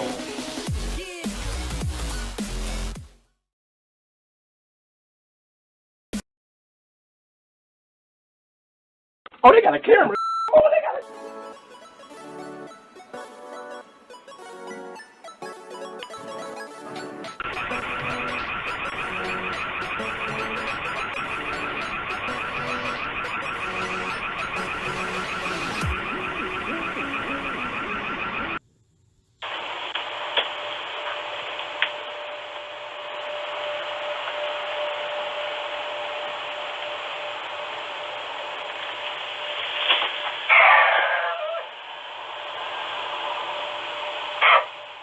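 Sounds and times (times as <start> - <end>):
fast repeating high warble: 17.4 - 28.6.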